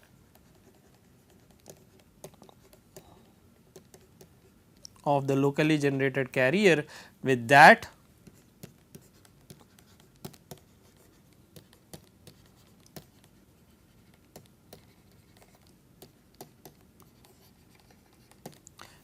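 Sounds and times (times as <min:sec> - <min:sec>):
pen scratching and tapping: 0:00.0 - 0:04.6, 0:08.2 - 0:18.8.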